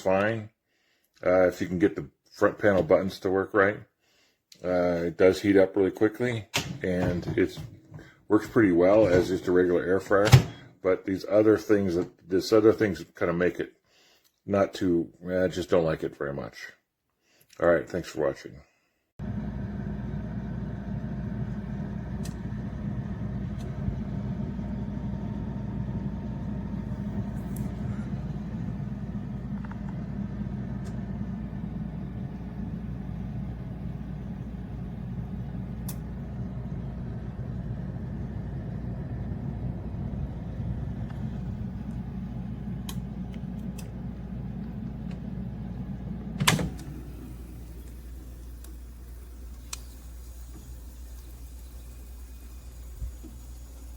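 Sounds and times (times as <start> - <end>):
air fryer motor and fan hum: 8.7 - 10.6, 19.2 - 53.9.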